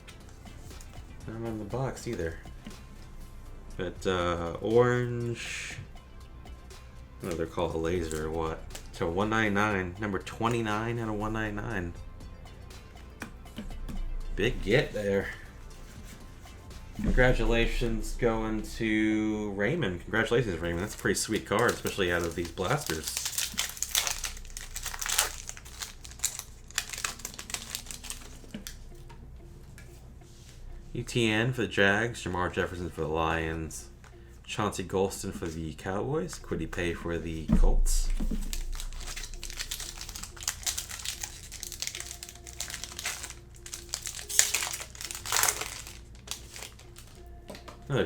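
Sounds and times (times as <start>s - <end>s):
cards being handled: 2.0s - 2.4s, 7.2s - 9.2s, 20.4s - 28.8s, 38.1s - 48.0s
plastic packaging crinkling: 20.6s - 28.8s, 38.3s - 47.3s.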